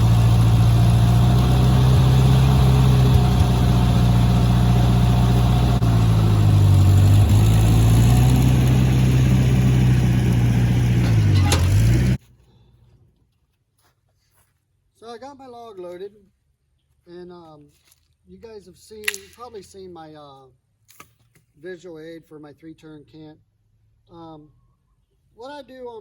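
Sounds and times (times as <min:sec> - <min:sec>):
engine running steadily: 0:00.0 - 0:12.2.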